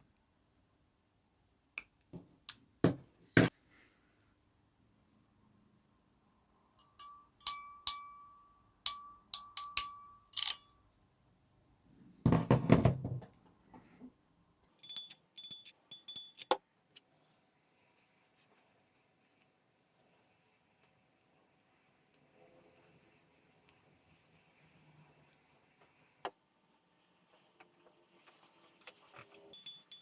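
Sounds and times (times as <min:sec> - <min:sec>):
small hard objects clicking: 0:14.8 - 0:16.5, 0:29.6 - 0:30.0.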